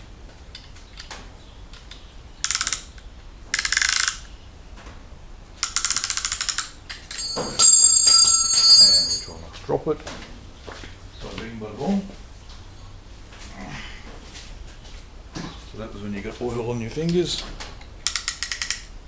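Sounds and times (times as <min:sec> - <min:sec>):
metallic ringing clink: 0:07.1 - 0:09.4.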